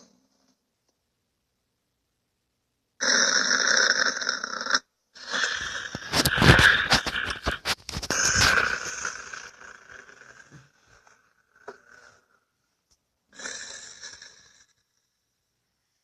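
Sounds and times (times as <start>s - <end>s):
person snoring: 3.0s - 12.5s, 13.3s - 15.0s.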